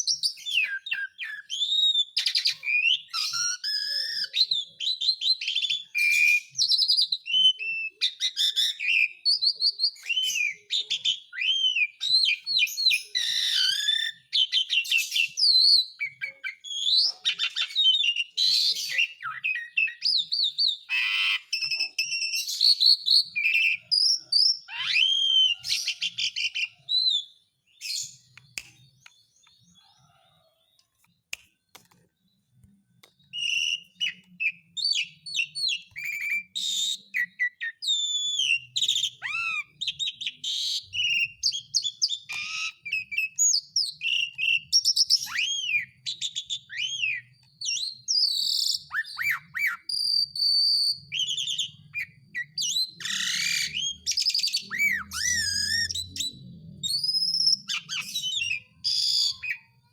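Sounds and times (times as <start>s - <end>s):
starling singing whistles and chirps: 0.0s - 30.1s, 33.1s - 59.9s.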